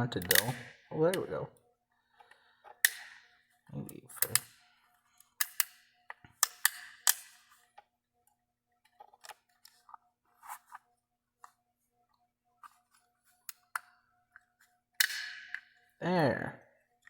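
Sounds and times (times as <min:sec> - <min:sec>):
metal tool clicking and scraping plastic: 0:00.2 - 0:00.7, 0:04.1 - 0:04.6, 0:05.2 - 0:07.9, 0:08.8 - 0:10.0
plastic part snapping off: 0:00.2 - 0:00.7.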